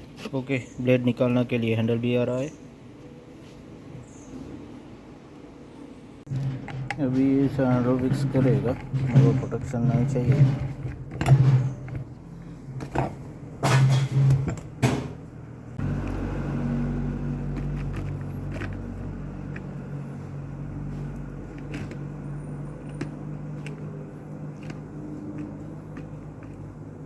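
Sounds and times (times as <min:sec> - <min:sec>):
handling knocks and clicks: 0:06.3 - 0:15.2, 0:17.4 - 0:20.2, 0:20.8 - 0:27.0.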